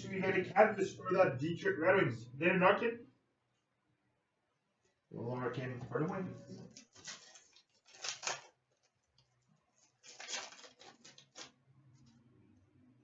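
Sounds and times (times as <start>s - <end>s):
cards rustling by hand: 6.4s - 12.3s.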